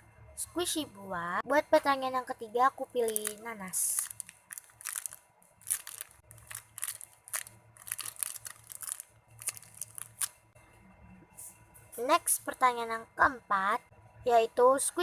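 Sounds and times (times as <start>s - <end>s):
squishy toy crinkling: 3.0s - 10.4s.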